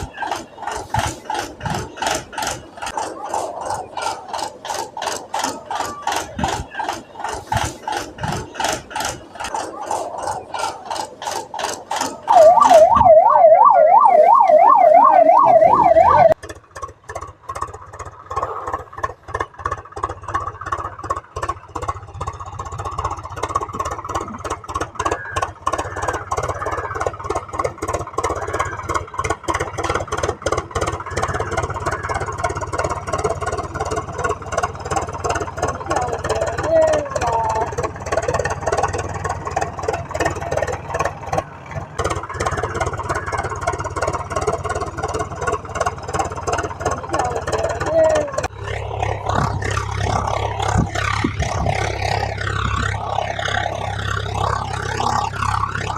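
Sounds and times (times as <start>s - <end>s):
fast clicking and rattling: 0.0s - 12.7s, 16.3s - 55.9s
loud warbling siren: 12.2s - 16.4s, 45.0s - 55.9s.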